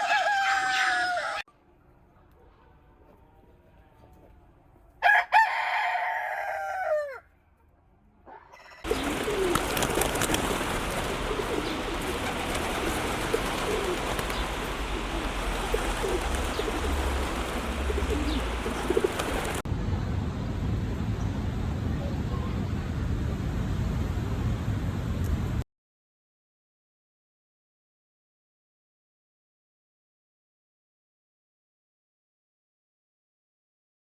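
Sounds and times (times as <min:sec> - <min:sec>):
rooster crowing: 0:00.0 - 0:01.5, 0:05.0 - 0:07.3.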